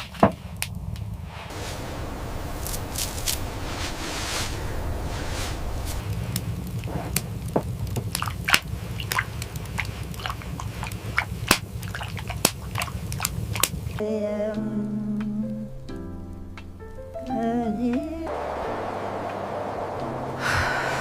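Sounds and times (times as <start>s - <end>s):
low steady hum: 0.7s - 11.1s
person humming a tune: 14.0s - 15.8s.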